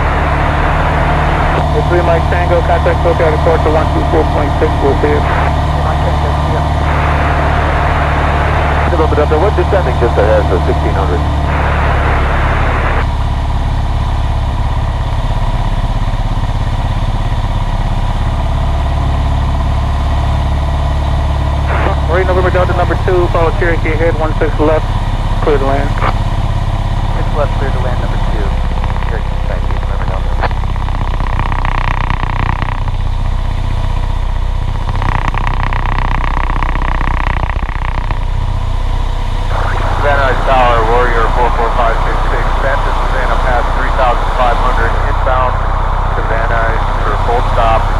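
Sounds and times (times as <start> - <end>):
radio hiss: 0.0 - 13.2, 21.6 - 26.2, 27.2 - 32.9, 34.8 - 38.2, 39.2 - 47.9
airplane engine and propeller droning: 0.0 - 47.9.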